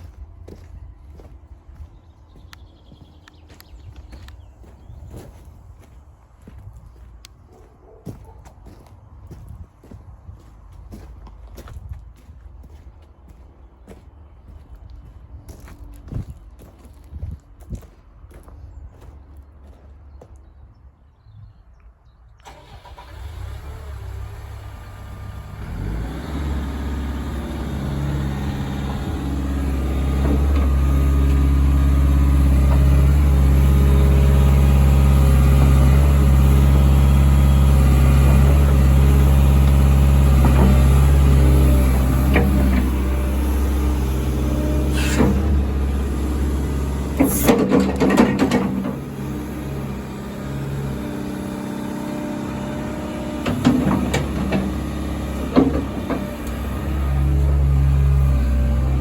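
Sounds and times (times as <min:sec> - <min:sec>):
excavator diesel engine running: 0:22.4 - 0:59.0.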